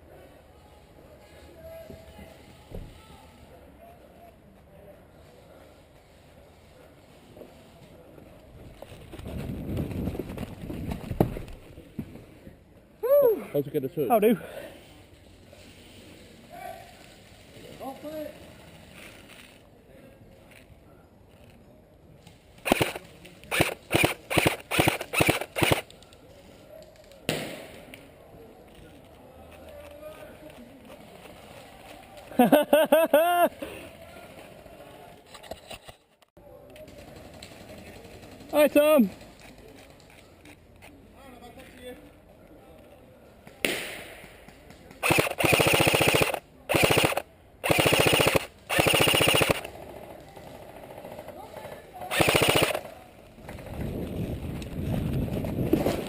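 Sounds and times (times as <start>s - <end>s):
airsoft rifle shots: 22.6s - 25.9s, 45.0s - 49.7s, 52.1s - 53.0s
sharp crack: 22.6s - 26.0s, 27.1s - 28.1s, 43.5s - 49.7s.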